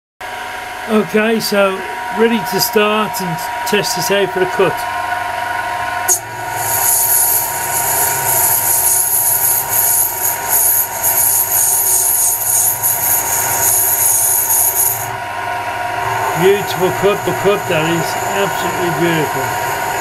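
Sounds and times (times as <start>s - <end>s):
lathe gear whine: 0.2s - 20.0s
cutting tool scraping hiss: 6.5s - 15.1s, 16.2s - 20.0s.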